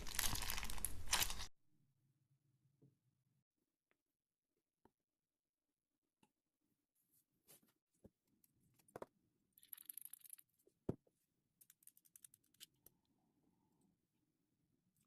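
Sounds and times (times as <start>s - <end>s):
slime crackling: 0.0s - 1.5s.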